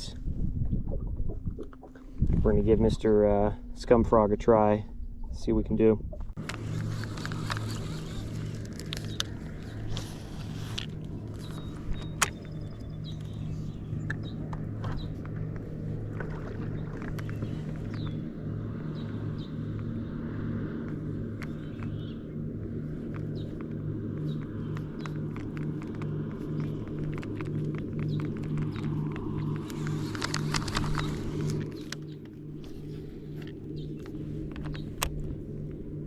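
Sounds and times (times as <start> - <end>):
electric motor hum: 6.3 - 36.0.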